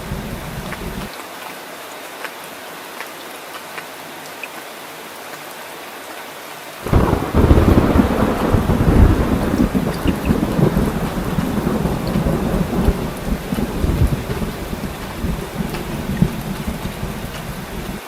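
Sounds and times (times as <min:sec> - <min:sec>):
thunder rumbling: 0:00.0 - 0:01.1, 0:06.8 - 0:18.0
steady rain: 0:00.0 - 0:18.0.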